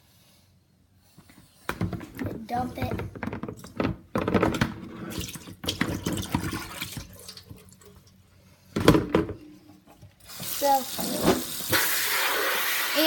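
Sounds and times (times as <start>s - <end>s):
water running into a sink: 5.0s - 8.1s, 10.3s - 13.0s.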